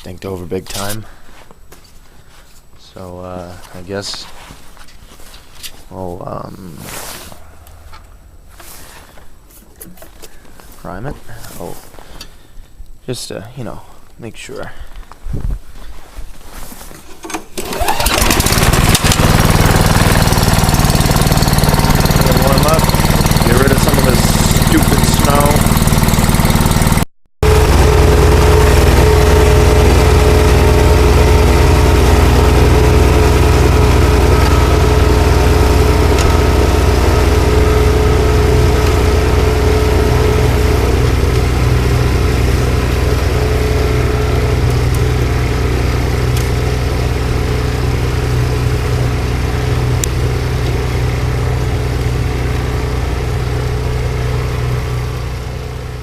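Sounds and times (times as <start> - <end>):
small petrol engine running: 17.2 - 56.0.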